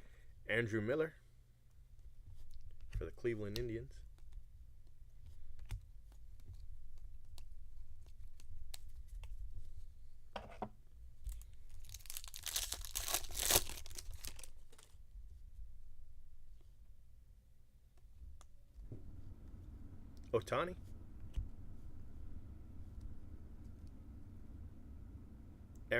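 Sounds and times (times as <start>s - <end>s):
foil wrapper tearing and crinkling: 11.3s - 15.0s.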